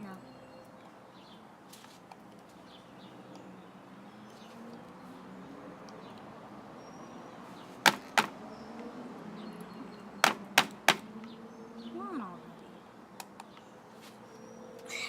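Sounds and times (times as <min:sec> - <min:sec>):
faint scraping and handling: 0:01.7 - 0:02.1.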